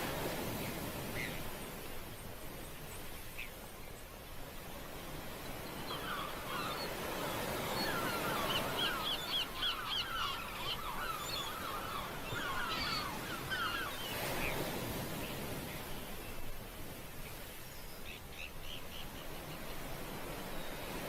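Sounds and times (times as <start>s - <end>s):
birds chirping: 5.3s - 15.9s.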